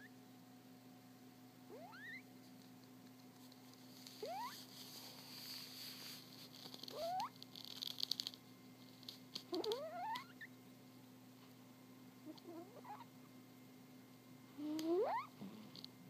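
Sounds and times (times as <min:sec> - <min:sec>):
cat snoring squeaky whistle: 0:01.8 - 0:02.2, 0:04.2 - 0:04.6, 0:14.8 - 0:15.3
soft hiss: 0:02.2 - 0:09.8.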